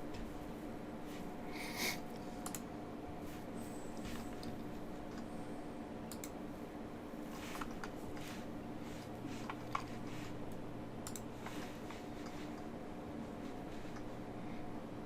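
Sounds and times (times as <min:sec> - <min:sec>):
low electrical hum: 0:00.0 - 0:15.0
computer mouse clicks: 0:02.2 - 0:02.7, 0:06.1 - 0:06.4, 0:09.4 - 0:12.7.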